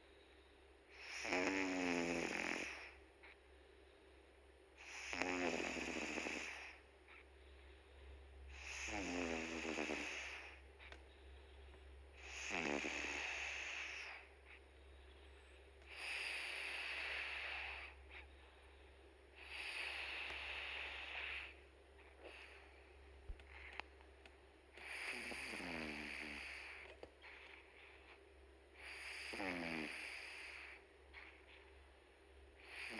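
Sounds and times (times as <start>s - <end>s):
cat snoring: 0.9s - 3.0s, 4.8s - 6.8s, 8.5s - 10.6s, 12.2s - 14.3s, 15.9s - 18.0s, 19.4s - 21.6s, 22.2s - 22.7s, 24.8s - 28.0s, 28.8s - 31.7s, 32.6s - 32.9s.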